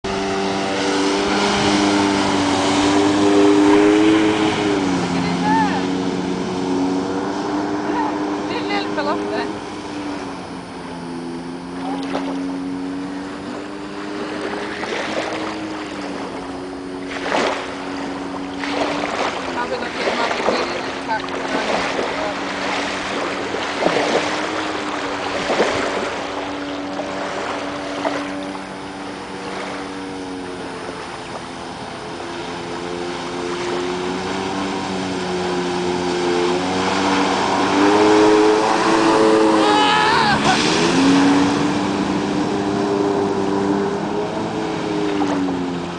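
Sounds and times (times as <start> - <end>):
jet ski engine running: 0.0 - 45.9.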